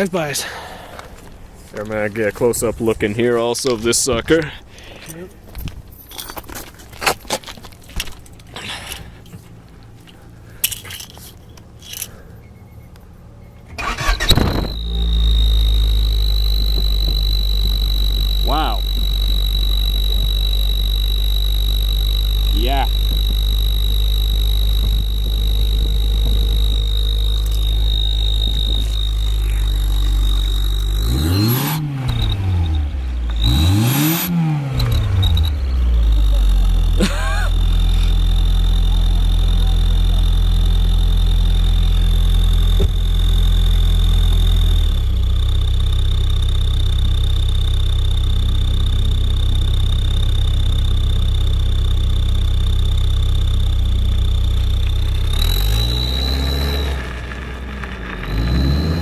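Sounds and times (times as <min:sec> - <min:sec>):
car engine idling and revving: 0:00.0 - 0:59.0
high turbo whistle: 0:13.8 - 0:59.0.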